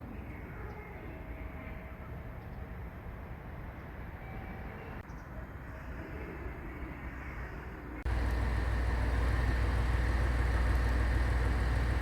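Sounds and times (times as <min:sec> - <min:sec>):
train rumbling: 0:08.0 - 0:12.0.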